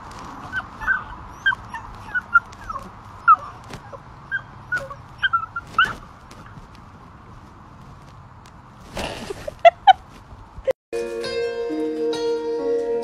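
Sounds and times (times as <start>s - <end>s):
puppy yelping: 0.4s - 6.1s.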